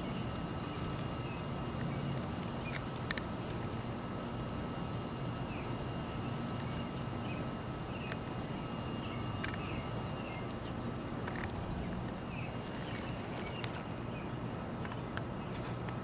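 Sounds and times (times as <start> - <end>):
steady low rumble: 0.0 - 16.0
bird chirps: 5.5 - 10.8.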